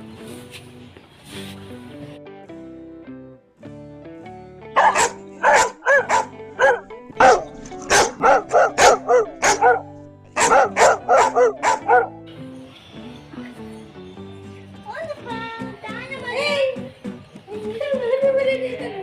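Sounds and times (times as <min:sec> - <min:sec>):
background music: 0:00.0 - 0:19.0
puppy yapping: 0:04.8 - 0:12.1.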